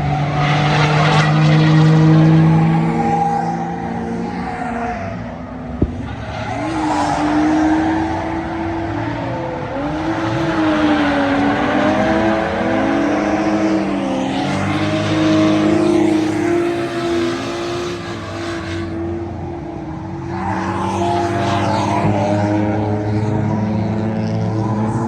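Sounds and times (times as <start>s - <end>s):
drift car engines revving: 0.0s - 25.0s
tyre and exhaust noise: 5.1s - 13.4s.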